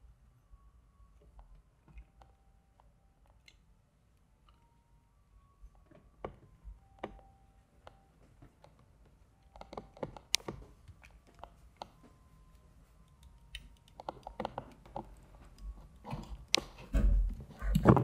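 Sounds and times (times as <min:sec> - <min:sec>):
plastic toy clicks and taps: 0:13.2 - 0:15.2.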